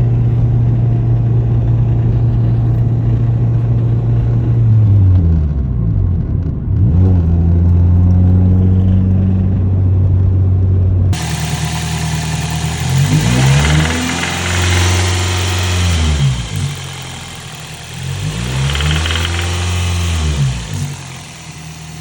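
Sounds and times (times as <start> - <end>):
car engine idling and revving: 0.0 - 22.0
engine knocking noise: 11.2 - 22.0.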